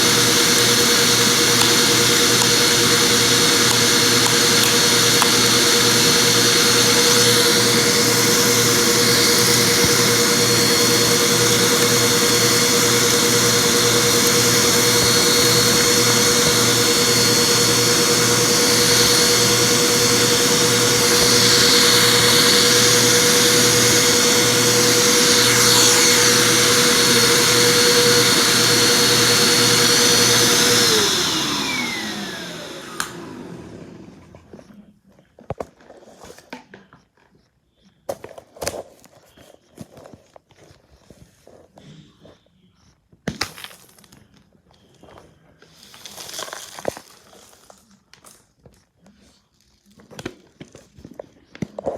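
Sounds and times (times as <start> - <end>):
vacuum motor winding down: 0.0 - 34.6
vacuum cleaner running: 0.0 - 34.9.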